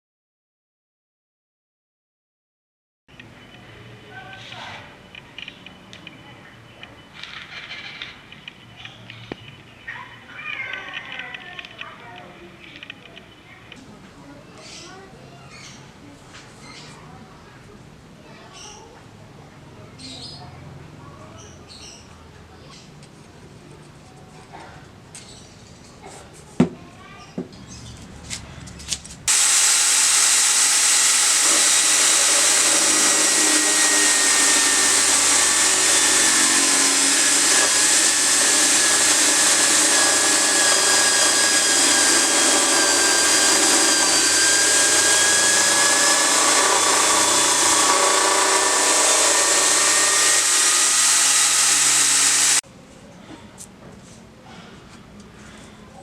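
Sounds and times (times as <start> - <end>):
power tool running on metal: 29.3 - 52.6.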